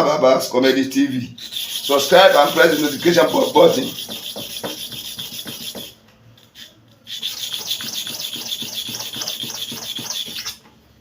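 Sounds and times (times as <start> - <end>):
blade rasping on sharpening surface: 1.4 - 6.0, 6.6 - 10.6.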